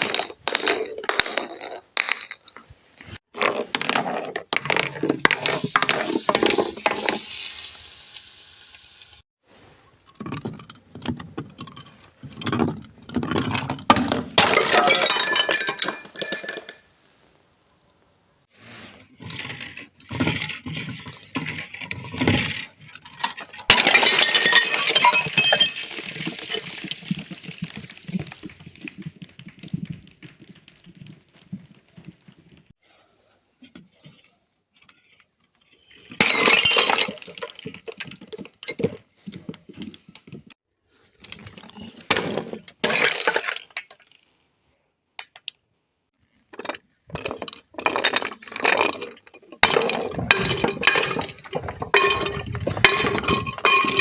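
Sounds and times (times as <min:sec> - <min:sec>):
glass bottles smashing: 0:14.0 - 0:16.9, 0:21.4 - 0:29.7, 0:36.1 - 0:39.0, 0:42.1 - 0:44.0, 0:46.6 - 0:54.0
glass shards clinking: 0:23.0 - 0:27.7, 0:47.2 - 0:54.0.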